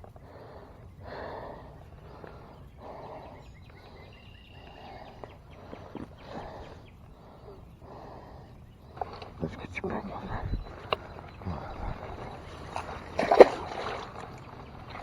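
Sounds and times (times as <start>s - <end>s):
man breathing heavily: 0.0s - 9.1s, 10.8s - 13.0s.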